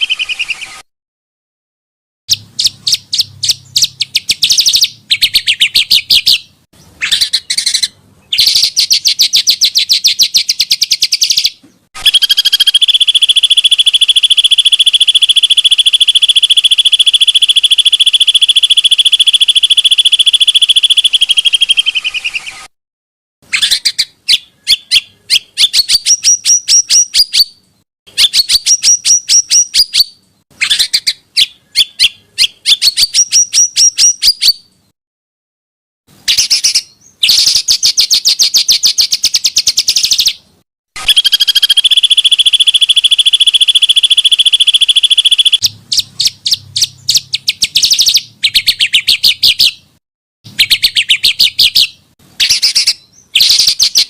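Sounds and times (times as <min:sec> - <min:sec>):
songbirds chirping: 0:02.3 - 0:22.6, 0:23.6 - 0:34.9, 0:41.4 - 0:50.0
bird trilling roll: 0:12.0 - 0:22.7, 0:41.0 - 0:45.6.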